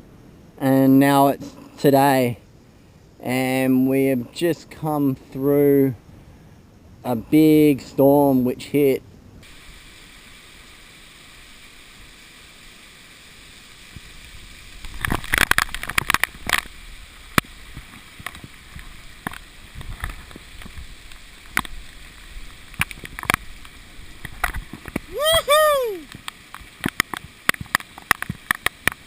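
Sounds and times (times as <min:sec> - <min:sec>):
steady hiss: 0:00.0 - 0:29.0
water splashing and sloshing: 0:10.0 - 0:25.2.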